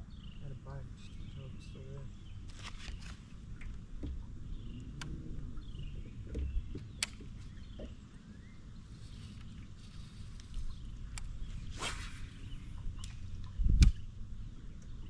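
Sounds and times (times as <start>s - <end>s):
sharp clicks: 6.3s - 7.4s
wind on microphone: 9.0s - 14.1s.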